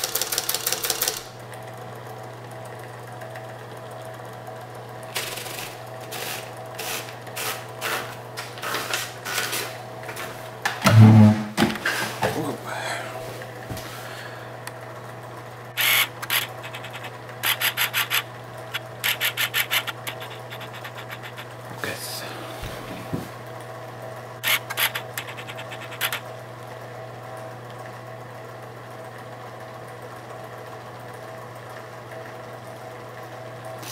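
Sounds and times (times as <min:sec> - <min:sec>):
typewriter keys clicking: 0:00.0 - 0:01.3, 0:15.8 - 0:21.4, 0:24.4 - 0:26.2
typewriter motor humming: 0:00.0 - 0:01.4, 0:05.1 - 0:08.0, 0:15.7 - 0:21.6, 0:24.4 - 0:26.2
mechanical clunk and whir: 0:10.7 - 0:12.2.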